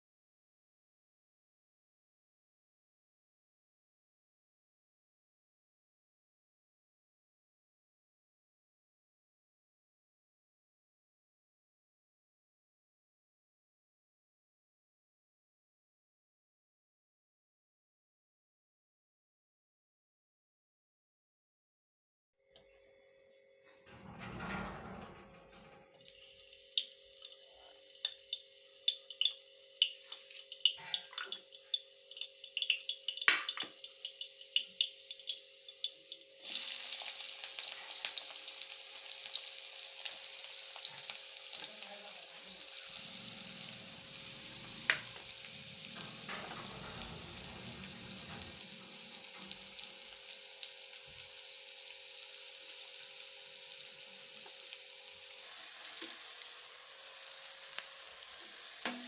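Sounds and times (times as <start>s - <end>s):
food frying in hot oil: 26.0s - 59.0s.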